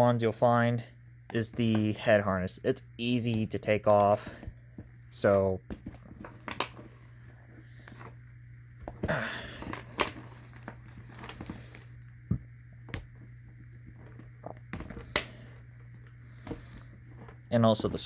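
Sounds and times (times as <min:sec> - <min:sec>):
steady low hum: 0:00.0 - 0:18.0
rubber harness rustling: 0:08.9 - 0:12.1, 0:13.0 - 0:18.0.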